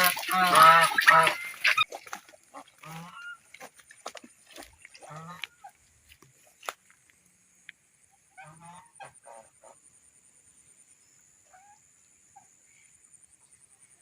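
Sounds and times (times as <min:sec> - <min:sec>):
goose honking: 0:00.0 - 0:01.9, 0:02.5 - 0:03.4, 0:05.0 - 0:05.8, 0:08.3 - 0:09.8.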